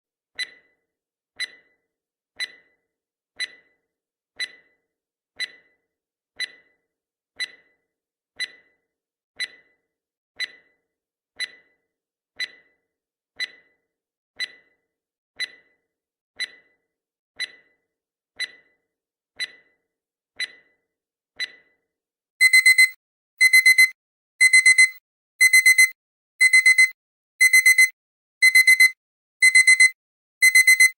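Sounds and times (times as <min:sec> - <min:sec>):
timer ticking: 0:00.4 - 0:00.7, 0:01.4 - 0:01.7, 0:02.4 - 0:02.7, 0:03.4 - 0:03.7, 0:04.4 - 0:04.7, 0:05.4 - 0:05.7, 0:06.4 - 0:06.8, 0:07.4 - 0:07.7, 0:08.4 - 0:08.7, 0:09.4 - 0:09.7, 0:10.4 - 0:10.7, 0:11.4 - 0:11.7, 0:12.4 - 0:12.7, 0:13.4 - 0:13.7, 0:14.4 - 0:14.7, 0:15.4 - 0:15.8, 0:16.4 - 0:16.8, 0:17.4 - 0:17.7, 0:18.4 - 0:18.7, 0:19.4 - 0:19.7, 0:20.4 - 0:20.7, 0:22.4 - 0:30.9
alarm beeping: 0:22.4 - 0:30.9.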